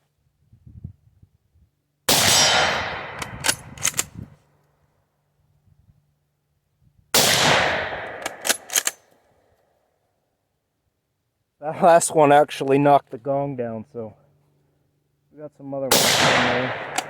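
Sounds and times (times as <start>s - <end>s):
rifle shots booming: 2.1s - 4.2s, 7.1s - 8.9s, 15.9s - 17.0s
rifle bolt metallic clicks: 2.9s - 4.3s, 8.0s - 9.3s, 16.0s - 17.0s.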